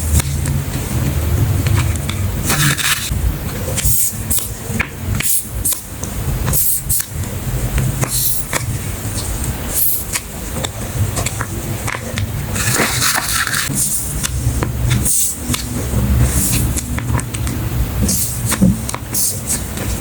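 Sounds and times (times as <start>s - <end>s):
plastic and paper rustling: 10.6s - 13.7s.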